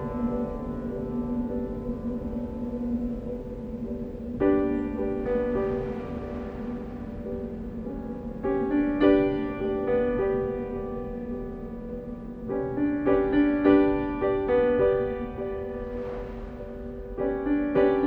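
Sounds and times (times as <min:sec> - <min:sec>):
slow piano chords: 0:00.0 - 0:18.0.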